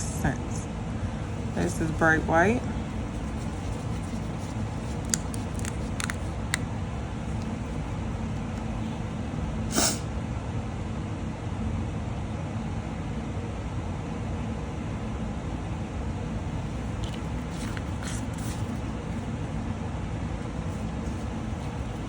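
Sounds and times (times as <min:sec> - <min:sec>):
low background hum: 0:00.0 - 0:22.0
rustling: 0:02.8 - 0:09.2, 0:20.6 - 0:22.0.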